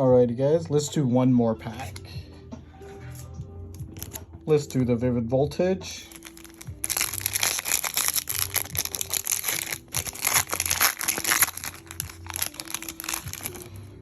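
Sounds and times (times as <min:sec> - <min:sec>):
foil wrapper crinkling and tearing: 0:06.1 - 0:13.7.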